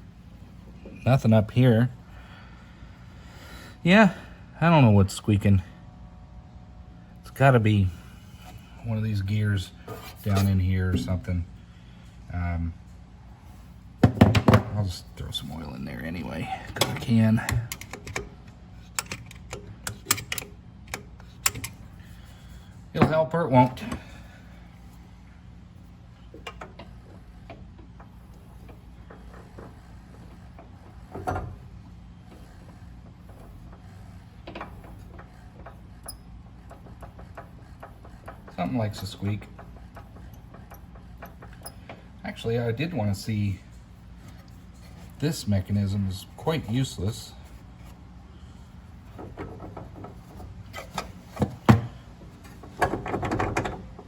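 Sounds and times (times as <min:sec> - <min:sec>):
faint handling clicks and knocks: 0:16.7 - 0:22.2, 0:26.2 - 0:45.2, 0:46.5 - 0:54.0.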